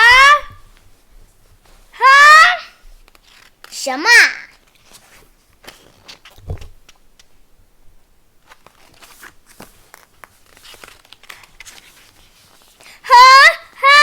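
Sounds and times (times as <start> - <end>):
paper rustling: 2.8 - 7.4, 8.4 - 13.0.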